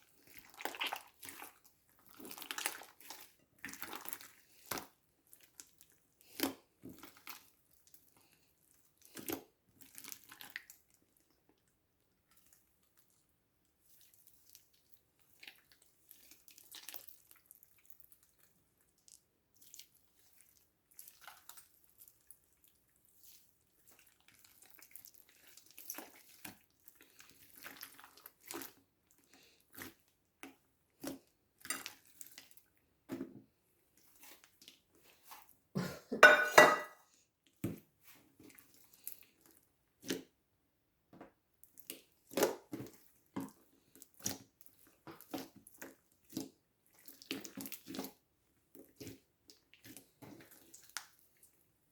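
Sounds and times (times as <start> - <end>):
slime squelching: 0.0 - 10.9, 13.8 - 32.7, 41.6 - 51.7.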